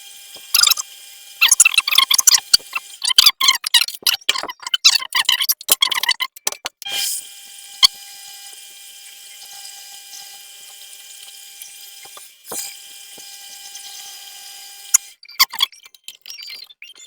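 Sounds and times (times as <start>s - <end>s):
lathe drilling metal: 0.0s - 3.1s, 6.9s - 15.2s.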